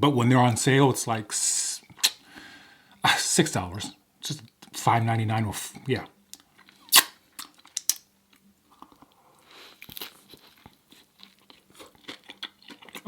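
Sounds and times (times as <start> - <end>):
chewing with crunches: 6.4 - 13.0
crunchy bite: 6.9 - 8.0
mouth clicks: 6.9 - 8.0.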